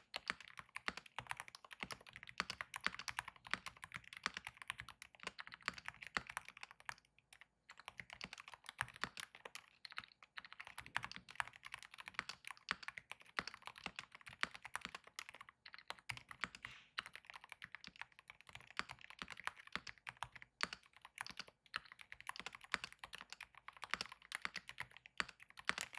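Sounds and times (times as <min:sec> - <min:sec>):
fast typing on keyboard: 0:00.0 - 0:25.9.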